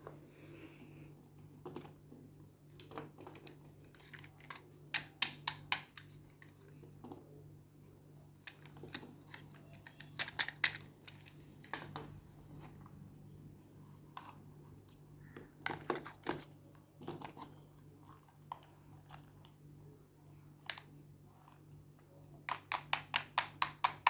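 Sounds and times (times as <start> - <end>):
faint steady hum: 0.0 - 24.0
plastic packaging clicks and taps: 2.8 - 6.1, 22.5 - 24.0.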